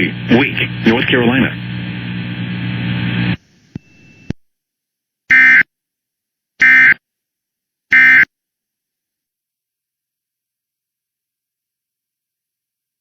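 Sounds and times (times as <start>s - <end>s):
steady hum: 0.0s - 4.4s.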